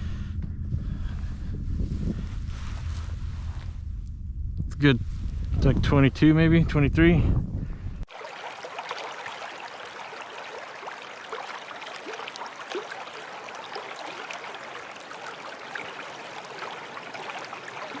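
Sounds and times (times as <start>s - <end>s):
water trickling and lapping: 8.0s - 18.0s
tiny crackling splashes: 8.1s - 18.0s.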